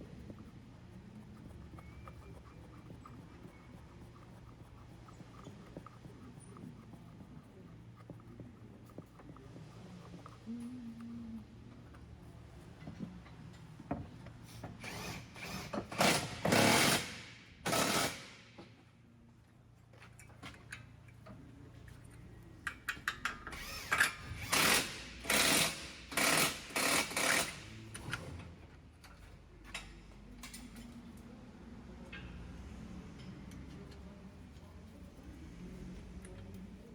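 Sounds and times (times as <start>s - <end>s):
power tool bursts: 14.8s - 18.4s, 23.6s - 27.6s.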